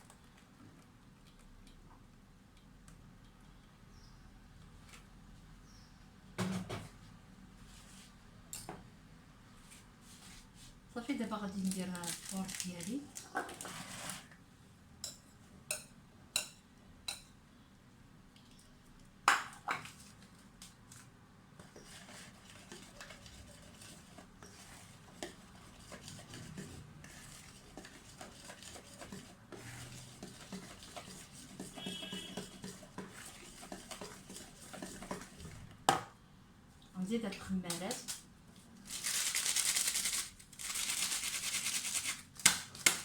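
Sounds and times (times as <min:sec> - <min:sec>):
stirring batter scraping: 0:12.3 - 0:14.4, 0:21.6 - 0:35.7.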